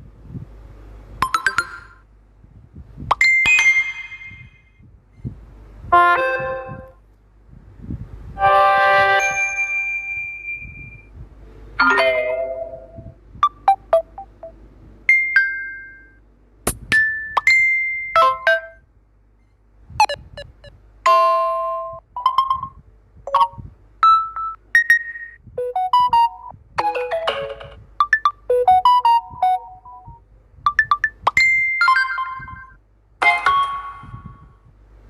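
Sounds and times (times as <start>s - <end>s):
phone electronic chimes: 28.0s - 32.7s.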